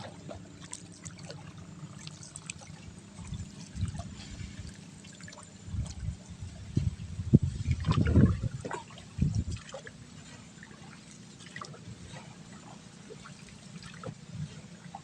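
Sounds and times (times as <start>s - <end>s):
water trickling and lapping: 0.0s - 15.0s
low rumbling thumps: 5.6s - 9.6s.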